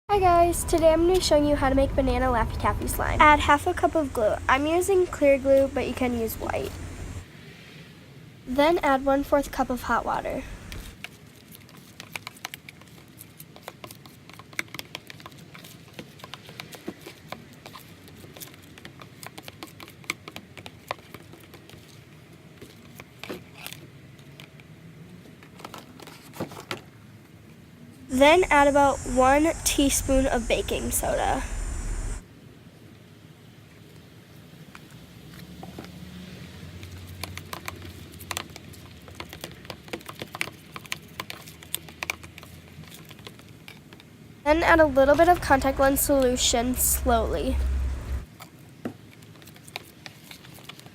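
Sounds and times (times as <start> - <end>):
low steady hum: 0.1 - 7.2, 28.1 - 32.2, 44.5 - 48.2.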